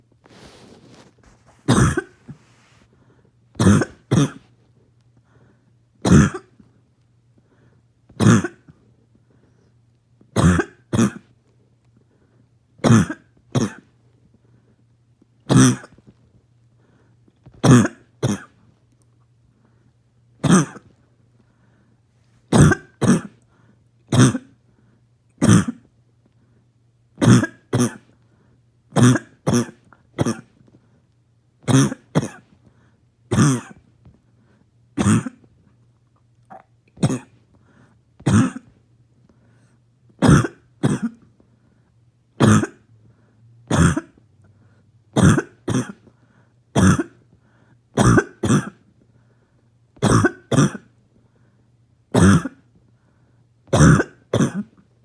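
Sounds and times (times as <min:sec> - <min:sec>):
person coughing harshly: 0:01.2 - 0:02.8, 0:03.6 - 0:04.5, 0:06.0 - 0:06.6, 0:08.2 - 0:08.7, 0:10.4 - 0:11.3, 0:12.8 - 0:13.9, 0:15.5 - 0:16.0, 0:17.6 - 0:18.6, 0:20.4 - 0:20.9, 0:22.5 - 0:23.4, 0:24.1 - 0:24.5, 0:25.4 - 0:25.8, 0:27.2 - 0:28.1, 0:29.0 - 0:30.5, 0:31.7 - 0:32.5, 0:33.3 - 0:33.8, 0:35.0 - 0:35.4, 0:37.0 - 0:37.4, 0:38.2 - 0:38.7, 0:40.2 - 0:41.2, 0:42.4 - 0:42.8, 0:43.7 - 0:44.2, 0:45.2 - 0:46.1, 0:46.8 - 0:47.2, 0:48.0 - 0:48.8, 0:50.0 - 0:50.9, 0:52.2 - 0:52.6, 0:53.7 - 0:54.8.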